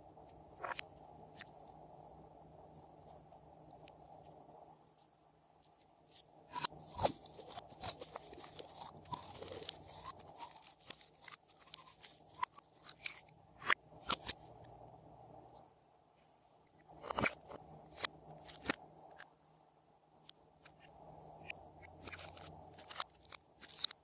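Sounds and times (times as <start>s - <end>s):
slime popping and crackling: 6.5s - 13.2s.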